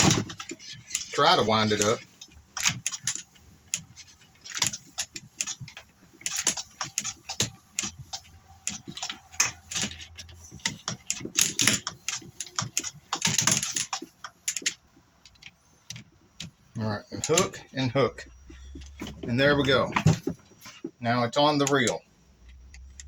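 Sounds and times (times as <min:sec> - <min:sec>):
plastic hose reel clicking: 0:00.0 - 0:23.0.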